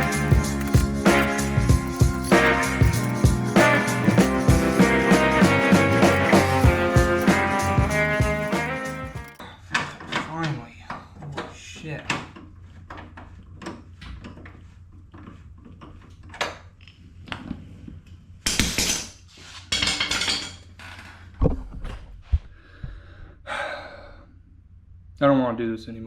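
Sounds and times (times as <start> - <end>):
metal scraping bursts: 0.0 - 9.4
metal tools clinking: 0.0 - 9.4.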